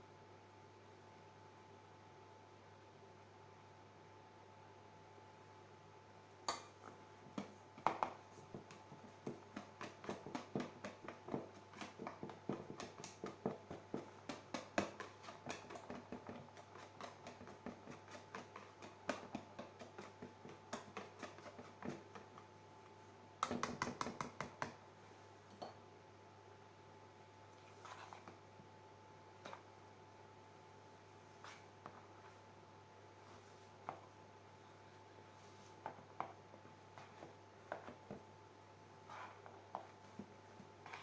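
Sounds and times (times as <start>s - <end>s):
spatula scraping mixing bowl: 7.3s - 22.5s, 27.7s - 28.4s, 39.0s - 41.0s.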